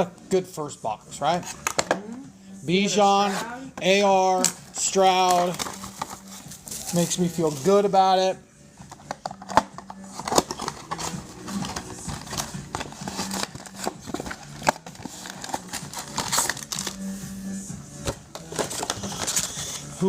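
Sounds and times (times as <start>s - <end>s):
foil wrappers crinkling and tearing: 4.9s - 7.9s, 10.1s - 17.1s, 18.3s - 20.0s
cards being handled: 5.2s - 7.8s, 8.9s - 17.2s, 18.0s - 20.0s.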